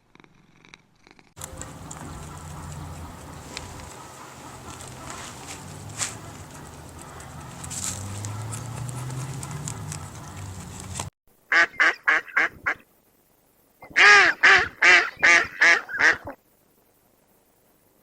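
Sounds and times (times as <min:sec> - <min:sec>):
duck quacking: 0:01.4 - 0:10.7, 0:11.5 - 0:12.8, 0:13.8 - 0:16.4.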